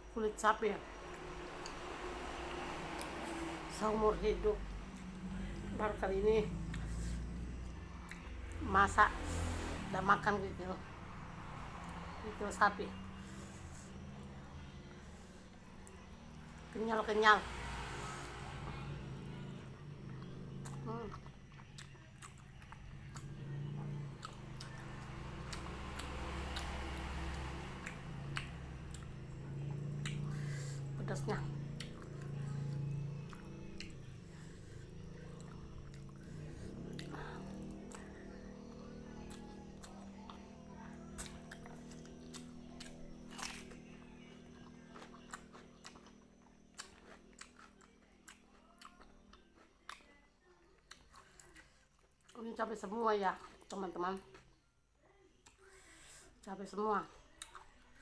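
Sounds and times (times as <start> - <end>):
wet chewing mouth sounds: 6.5 - 8.6, 19.3 - 50.2, 50.8 - 52.4.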